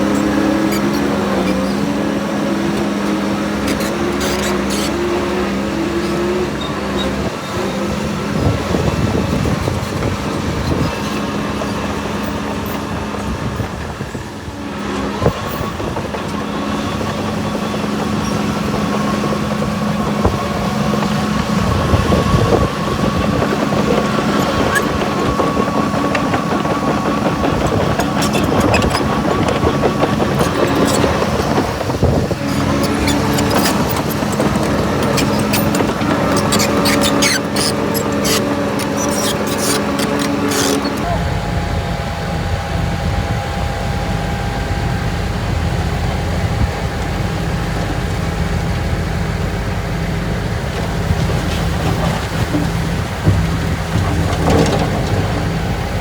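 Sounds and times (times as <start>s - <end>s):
diesel engine running: 0.0s - 56.0s
steady high whine: 41.0s - 48.2s.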